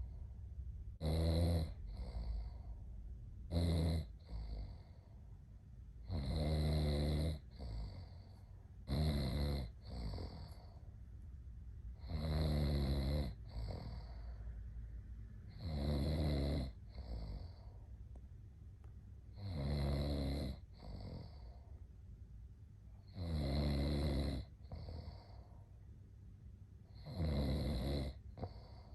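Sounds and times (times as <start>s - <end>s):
man snoring: 1.0s - 2.7s, 3.5s - 5.0s, 6.0s - 8.3s, 8.9s - 10.7s, 12.0s - 14.4s, 15.5s - 17.7s, 19.4s - 21.5s, 23.0s - 25.4s, 26.9s - 28.9s.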